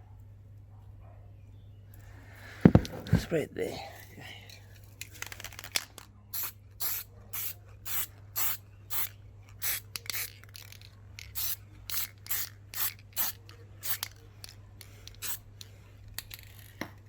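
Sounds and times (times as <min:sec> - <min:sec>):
spray-paint can hissing: 0:06.3 - 0:14.2, 0:15.1 - 0:15.4.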